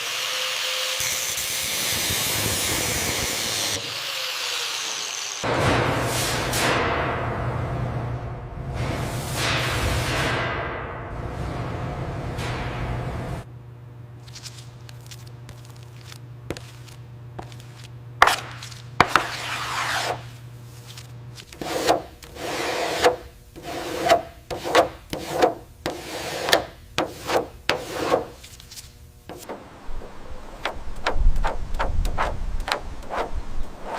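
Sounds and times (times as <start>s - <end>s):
low hum: 5.5s - 18.2s
scraping strokes: 14.3s - 33.9s.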